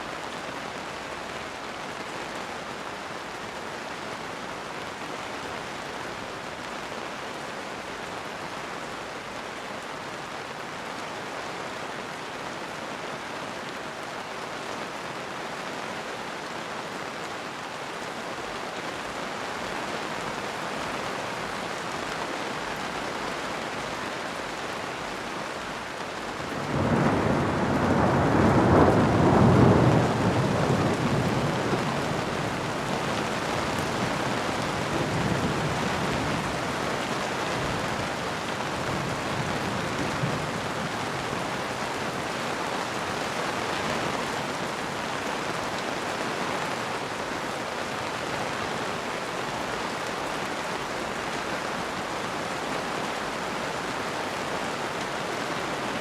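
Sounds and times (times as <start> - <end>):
heavy rain falling: 0.0 - 56.0
thunder rumbling: 26.6 - 41.9.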